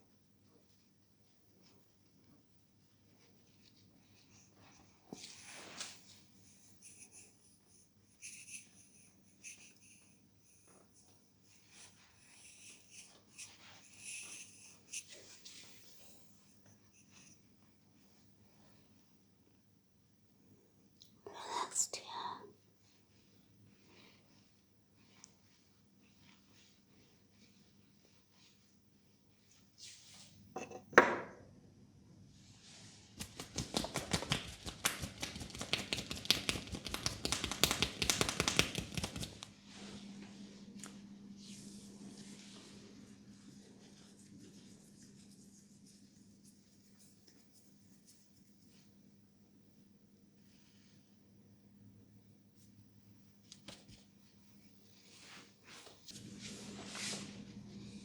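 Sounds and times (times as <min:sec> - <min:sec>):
fingers rubbing through hair: 0:08.2 - 0:16.2, 0:33.2 - 0:39.5, 0:43.6 - 0:48.9
finger snap: 0:33.2 - 0:39.5
hands tapping and rubbing scalp: 0:33.2 - 0:39.5.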